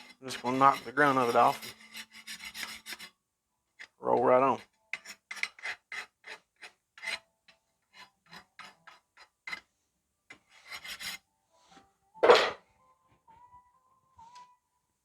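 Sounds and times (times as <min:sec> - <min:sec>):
file scraping steel blade: 0:00.0 - 0:03.2, 0:04.6 - 0:09.7, 0:10.4 - 0:11.2.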